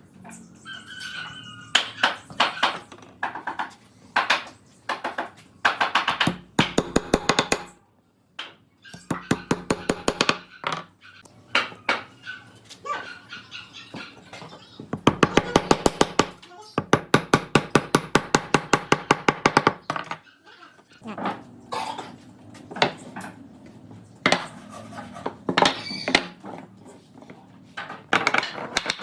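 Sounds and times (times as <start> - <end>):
tool knocking on wood: 4.2 - 7.7, 9.0 - 10.8, 15.0 - 20.2.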